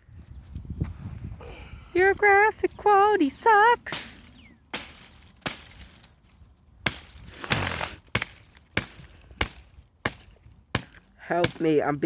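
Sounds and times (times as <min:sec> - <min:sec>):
hatchet chopping wood: 0:06.8 - 0:11.9.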